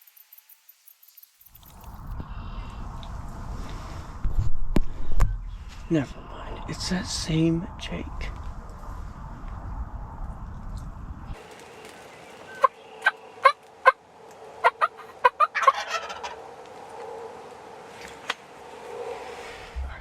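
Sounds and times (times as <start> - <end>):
low rumble: 1.6 - 11.4, 19.5 - 20.0
turkey calling: 12.4 - 14.0, 14.6 - 16.5
turkey rattling gobble: 12.6 - 14.0, 14.6 - 16.4.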